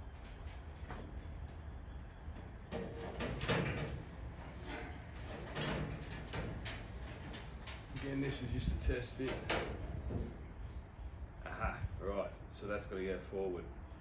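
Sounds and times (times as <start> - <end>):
metal panel scraping and knocking: 2.6 - 10.4.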